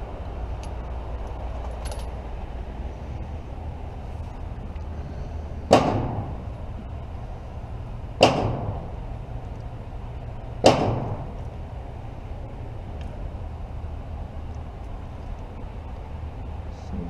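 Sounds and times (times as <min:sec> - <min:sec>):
gunshots with reverberation: 0:05.7 - 0:06.4, 0:08.2 - 0:08.9, 0:10.6 - 0:11.4.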